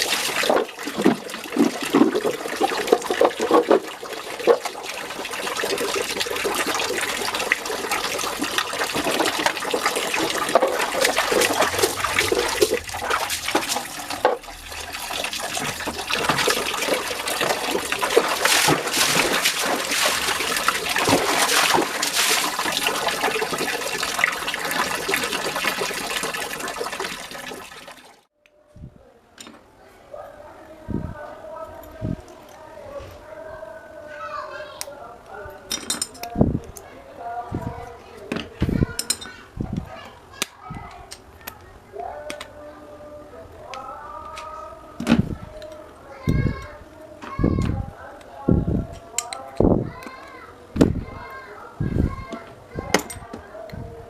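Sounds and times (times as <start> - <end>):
water running and splashing: 0.0 - 28.3.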